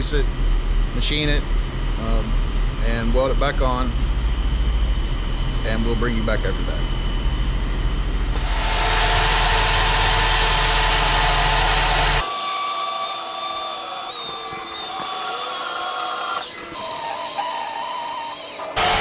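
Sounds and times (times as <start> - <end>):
power tools whirring: 8.3 - 19.0.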